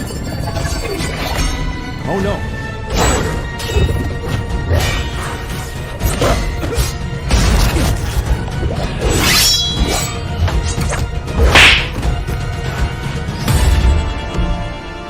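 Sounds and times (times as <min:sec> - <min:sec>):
film music: 0:00.0 - 0:15.0
sword whooshes and hits: 0:11.4 - 0:12.0.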